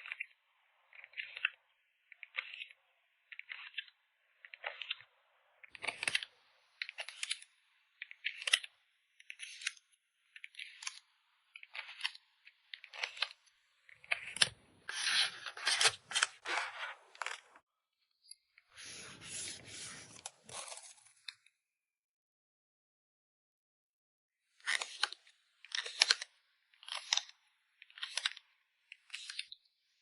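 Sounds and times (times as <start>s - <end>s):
paper and card rustling: 5.7s - 7.5s, 12.8s - 17.6s, 18.8s - 21.4s, 24.6s - 28.4s.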